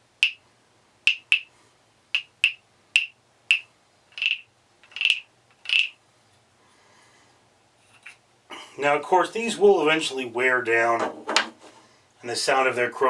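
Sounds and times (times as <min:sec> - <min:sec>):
wooden frog guiro rasping: 0:02.2 - 0:06.0.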